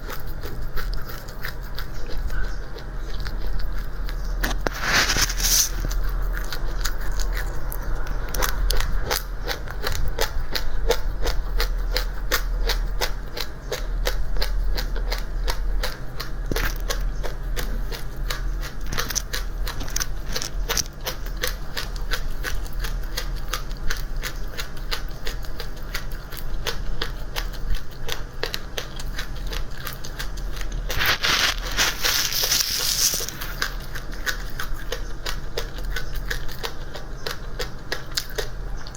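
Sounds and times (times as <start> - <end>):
seeds being chewed: 0.0 - 38.9
hissing rustle: 4.5 - 6.0, 30.8 - 33.7.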